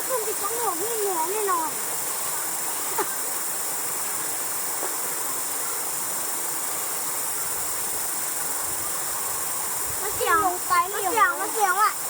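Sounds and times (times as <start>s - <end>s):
waterfall rushing over rocks: 0.0s - 12.0s.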